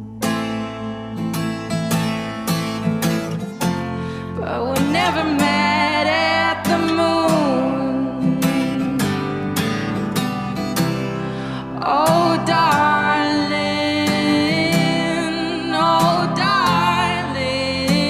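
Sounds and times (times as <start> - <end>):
strummed acoustic guitar: 0.0 - 18.0
person singing: 4.2 - 9.8, 11.4 - 18.0.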